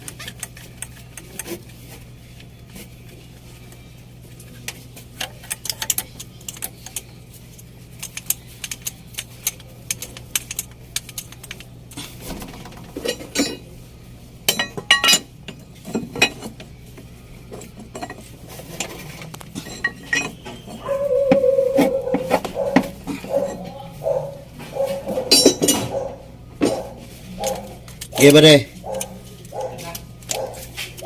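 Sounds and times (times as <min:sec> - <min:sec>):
steady low hum: 0:00.0 - 0:31.0
metal tools clinking: 0:13.0 - 0:13.7, 0:14.5 - 0:16.7, 0:17.5 - 0:21.2, 0:21.8 - 0:31.0.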